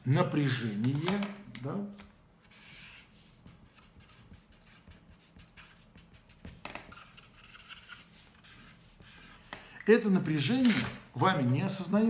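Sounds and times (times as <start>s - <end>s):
pen scratching handwriting: 2.5s - 9.4s.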